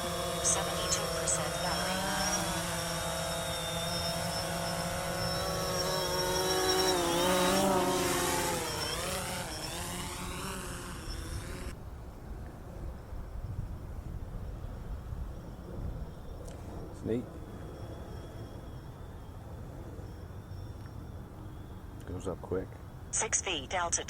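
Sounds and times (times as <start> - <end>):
drone propellers whining: 0.0 - 11.8, 15.0 - 22.0.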